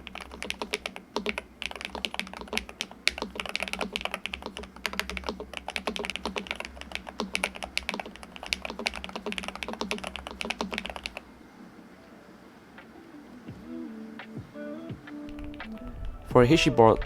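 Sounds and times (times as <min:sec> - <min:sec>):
fast keyboard typing: 0:00.0 - 0:11.2, 0:15.3 - 0:16.2.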